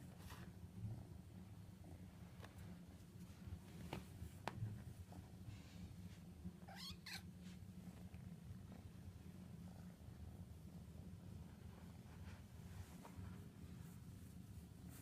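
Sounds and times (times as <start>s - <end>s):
kitten squeaking: 6.7s - 7.3s.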